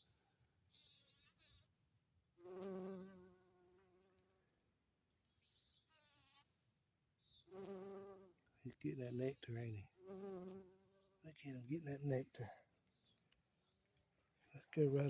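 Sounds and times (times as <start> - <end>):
bee buzzing: 2.4 - 4.4, 7.5 - 8.3, 10.0 - 11.2.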